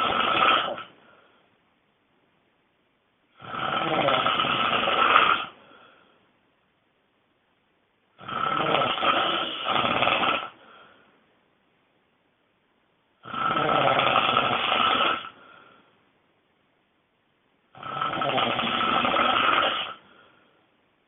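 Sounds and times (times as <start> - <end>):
person snoring loudly: 0.0 - 1.0, 3.4 - 5.6, 8.2 - 10.6, 13.2 - 15.4, 17.7 - 20.1
faint breath: 0.9 - 1.6, 5.6 - 6.4, 10.5 - 11.3, 15.3 - 16.2, 19.9 - 20.8.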